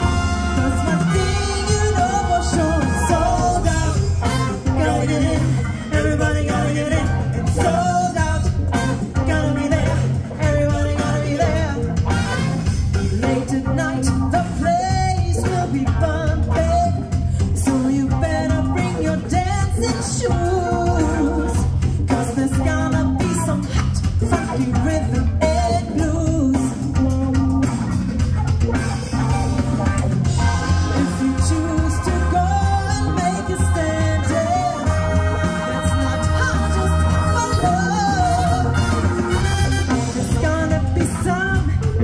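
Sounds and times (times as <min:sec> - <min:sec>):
person singing: 0:00.0 - 0:11.9, 0:30.4 - 0:42.0
drums: 0:00.0 - 0:42.0
guitar: 0:00.0 - 0:42.0.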